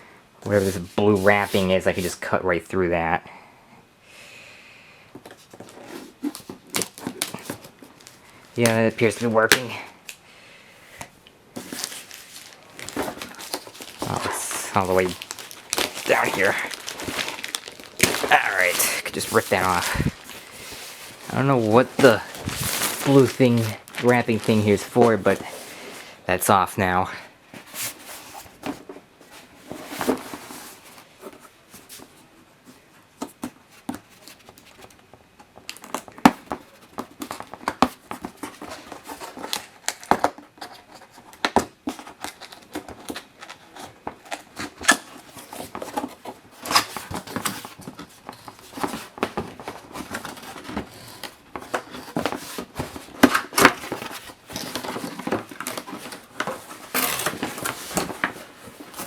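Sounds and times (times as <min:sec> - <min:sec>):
packaging crinkling and tearing: 0:05.6 - 0:09.8, 0:11.6 - 0:25.9, 0:35.7 - 0:59.0.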